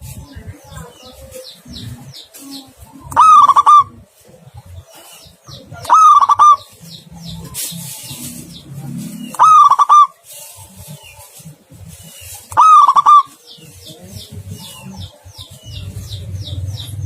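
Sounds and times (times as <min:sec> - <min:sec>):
small birds chirping: 0:00.0 - 0:17.0
dove cooing: 0:03.0 - 0:04.1, 0:05.6 - 0:07.3, 0:08.0 - 0:10.4, 0:12.5 - 0:16.3.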